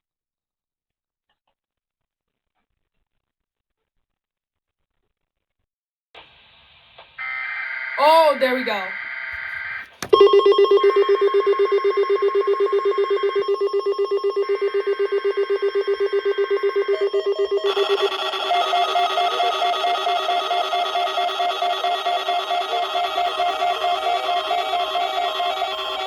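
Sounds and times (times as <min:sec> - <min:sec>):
rapid trilling alarm beep: 0:10.2 - 0:26.0.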